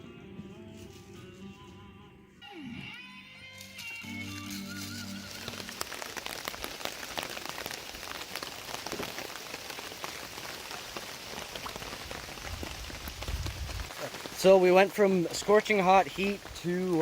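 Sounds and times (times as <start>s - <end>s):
heavy rain falling: 5.1s - 17.0s.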